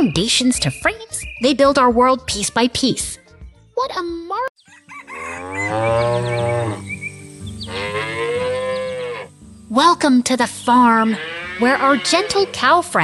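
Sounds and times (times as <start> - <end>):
cow mooing: 5.0 - 6.9, 7.6 - 9.3, 11.0 - 12.8.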